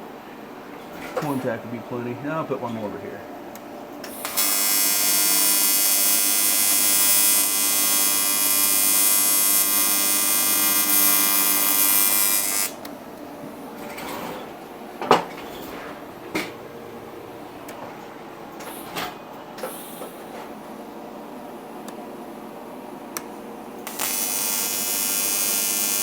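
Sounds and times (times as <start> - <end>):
welding arc buzzing: 4.0 - 12.9, 23.2 - 26.0.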